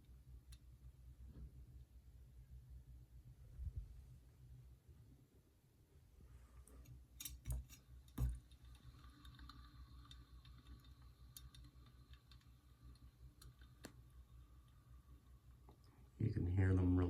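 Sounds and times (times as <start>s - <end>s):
ceiling fan motor whine: 0.0s - 17.0s
fan bearings clicking: 7.2s - 15.8s.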